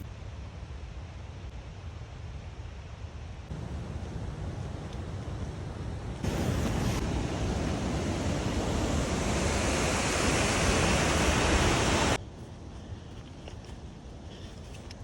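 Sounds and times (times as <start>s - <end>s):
waterfall roaring: 3.6s - 12.2s.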